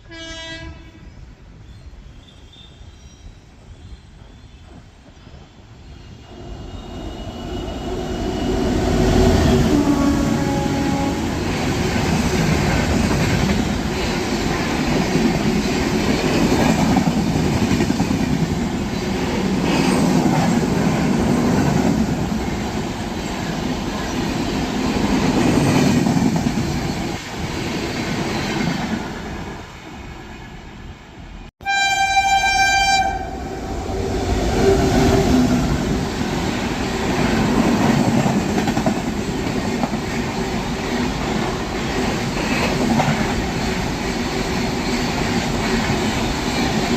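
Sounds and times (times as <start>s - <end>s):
train horn: 0.0s - 1.1s, 9.1s - 11.4s, 31.6s - 35.8s
train wheels rumbling: 3.5s - 30.3s, 31.7s - 46.9s.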